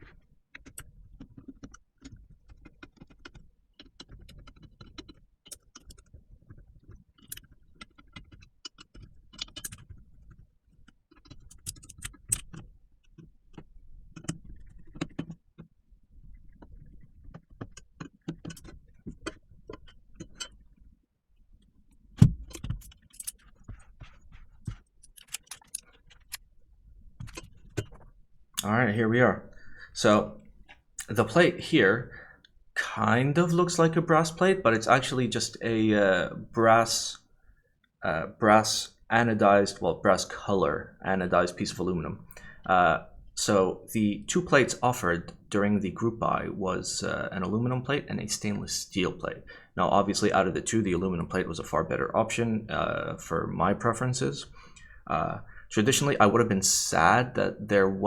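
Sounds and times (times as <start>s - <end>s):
metallic clicks and clinks: 22.5s - 23.5s.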